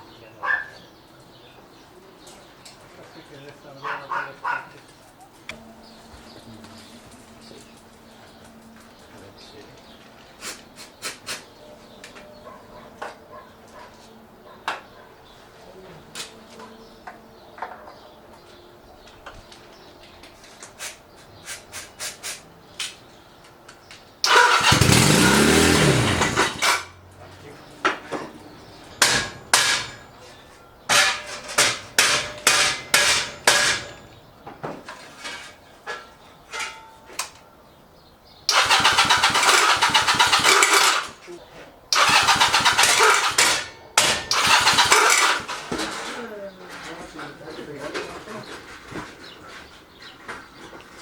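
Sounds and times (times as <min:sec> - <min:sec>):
motorcycle electric starter cranking: 0:24.2 - 0:27.0, 0:38.5 - 0:41.2, 0:41.9 - 0:46.1.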